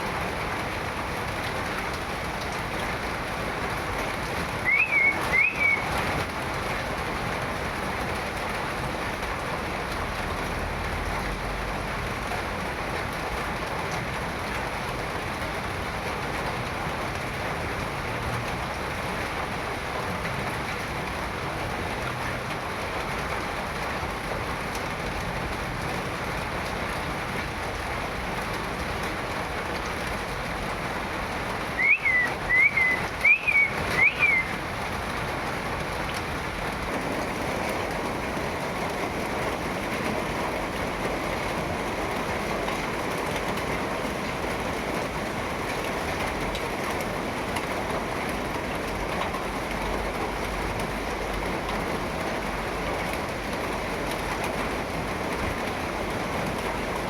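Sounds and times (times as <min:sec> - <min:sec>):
steady rain: 0:00.0 - 0:57.0
bird chirping: 0:04.7 - 0:05.9, 0:31.8 - 0:34.5.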